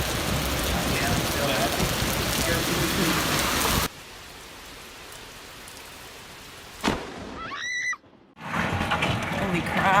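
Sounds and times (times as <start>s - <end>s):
heavy rain pounding: 0.0s - 7.4s
steady patter of rain: 0.0s - 10.0s.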